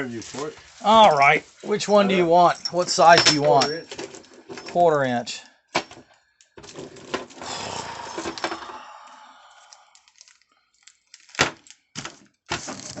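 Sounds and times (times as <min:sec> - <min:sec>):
tools and metal parts clattering: 0:02.4 - 0:05.1, 0:05.8 - 0:07.5.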